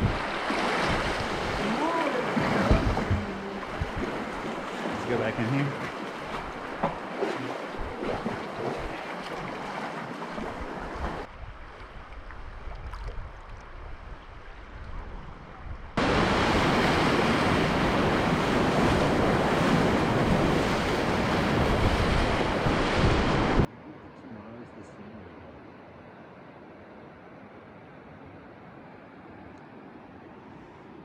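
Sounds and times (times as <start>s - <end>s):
rushing river whitewater: 0.0s - 11.3s, 16.0s - 23.7s.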